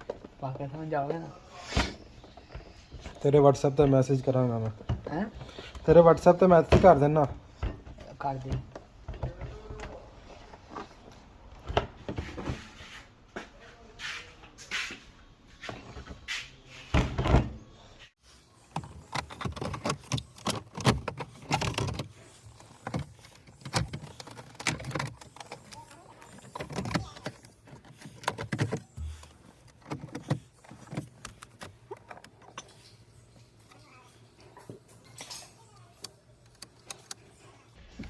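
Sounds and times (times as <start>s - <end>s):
hard parts clicking and knocking: 2.2s - 12.6s, 18.6s - 33.0s.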